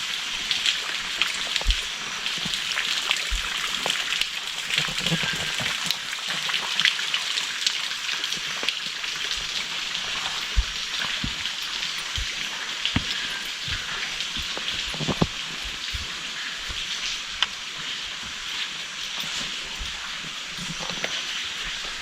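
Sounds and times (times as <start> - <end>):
rain pattering on leaves: 0.0 - 22.0
soft low thumps: 9.2 - 21.0.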